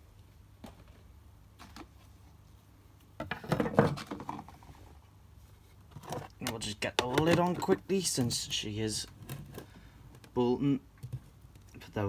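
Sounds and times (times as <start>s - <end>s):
clattering knocks and rustling: 3.2s - 4.8s.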